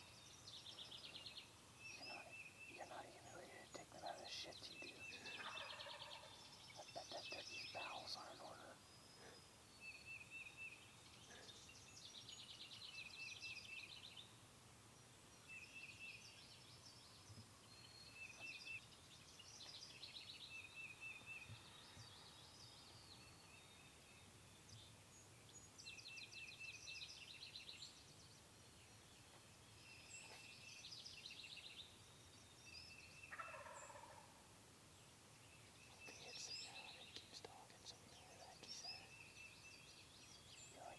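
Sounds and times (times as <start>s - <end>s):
birdsong trills and chirps: 0.0s - 14.4s, 34.9s - 40.9s.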